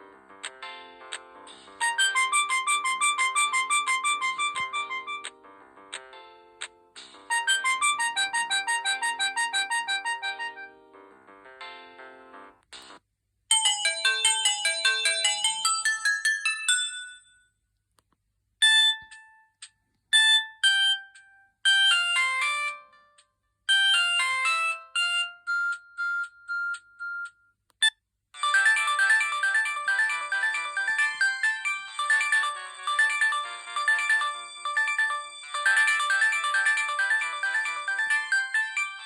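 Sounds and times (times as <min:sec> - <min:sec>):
mobile phone ringtones: 0:01.8 - 0:05.3, 0:07.3 - 0:10.7, 0:13.5 - 0:17.3, 0:28.4 - 0:39.0.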